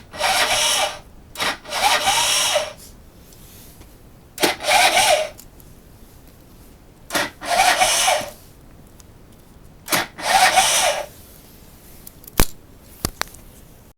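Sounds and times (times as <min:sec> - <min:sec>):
two-stroke engine cranking: 0:00.0 - 0:02.8, 0:04.4 - 0:05.4, 0:07.1 - 0:08.4, 0:09.9 - 0:11.1
starter click: 0:04.4 - 0:05.5, 0:07.1 - 0:08.4, 0:09.9 - 0:11.1.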